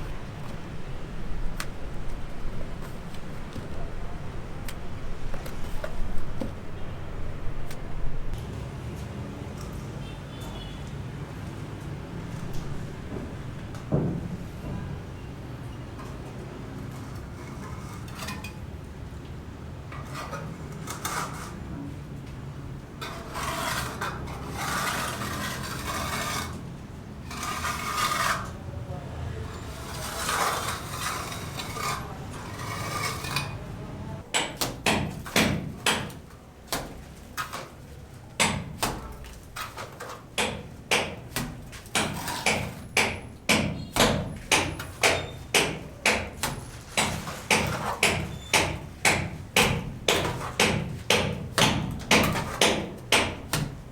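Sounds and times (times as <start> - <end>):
rasping scraping strokes: 23.0 - 28.6, 29.5 - 33.6.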